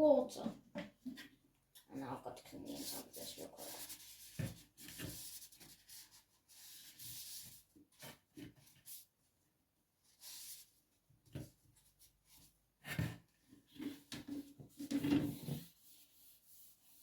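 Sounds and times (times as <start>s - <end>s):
rubbing and wiping on plastic: 2.0s - 9.2s, 13.6s - 17.0s.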